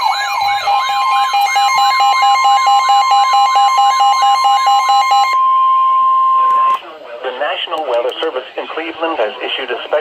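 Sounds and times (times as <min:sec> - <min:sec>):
steady loud warning tone: 0:00.0 - 0:06.8
sweeping electronic alarm tone: 0:00.0 - 0:06.8.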